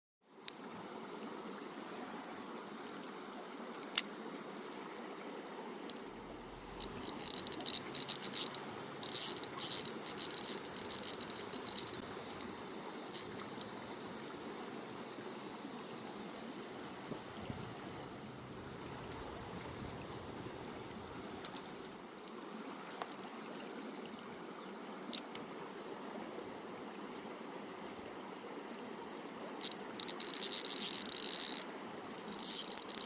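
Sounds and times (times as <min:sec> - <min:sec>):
sharp high-pitched clicking: 0:05.9 - 0:13.8, 0:29.6 - 0:31.7, 0:32.3 - 0:33.0.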